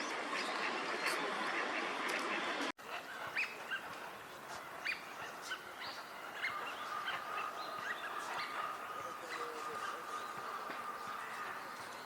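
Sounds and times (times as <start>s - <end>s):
ducks whistling calls: 4.8s - 12.0s.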